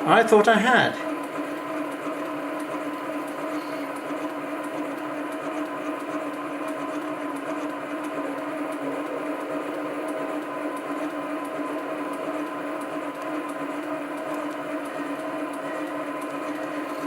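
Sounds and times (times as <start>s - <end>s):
lathe motor whining: 0.0s - 17.0s.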